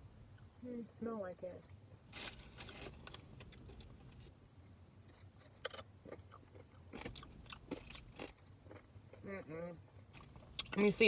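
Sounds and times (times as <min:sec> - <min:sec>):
chewing and mouth clicks: 0:05.0 - 0:09.2, 0:10.1 - 0:10.9.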